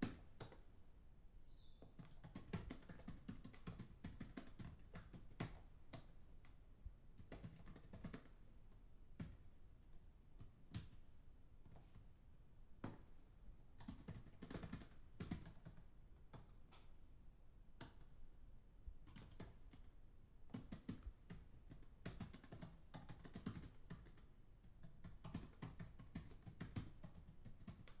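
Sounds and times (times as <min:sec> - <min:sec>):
distant keyboard typing: 0:01.9 - 0:06.2, 0:07.2 - 0:08.4, 0:13.8 - 0:16.6, 0:19.1 - 0:28.0.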